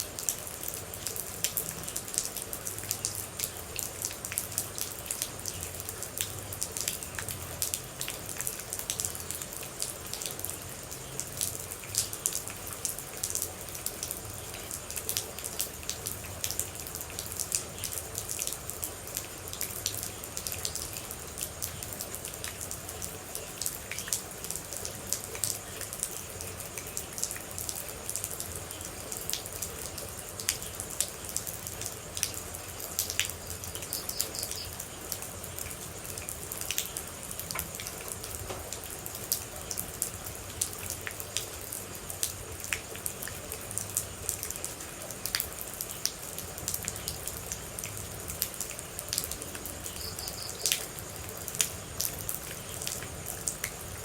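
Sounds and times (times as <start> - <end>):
rain falling: 0.0 - 54.0
water drops ticking: 32.2 - 39.8.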